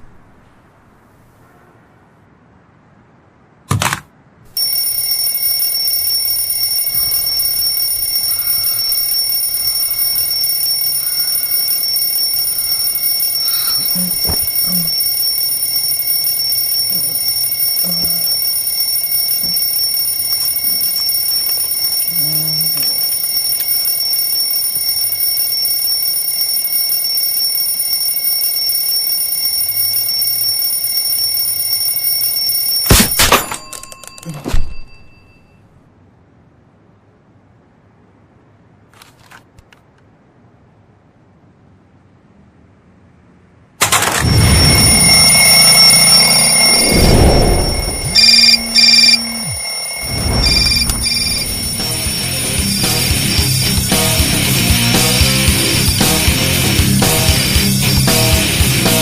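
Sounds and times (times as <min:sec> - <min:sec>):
alarm clock ringing: 0:04.6 - 0:35.6, 0:43.8 - 0:59.0.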